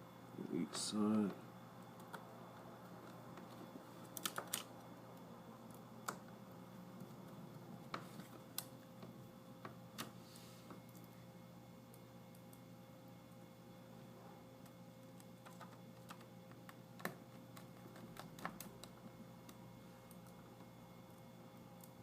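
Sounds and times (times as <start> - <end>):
small clicks and taps: 14.6 - 20.7.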